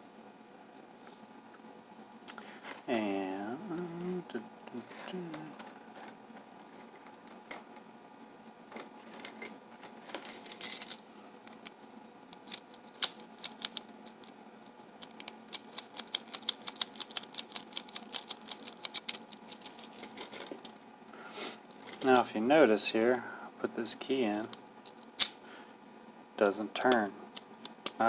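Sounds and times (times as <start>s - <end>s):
keys jangling: 15.6s - 20.8s.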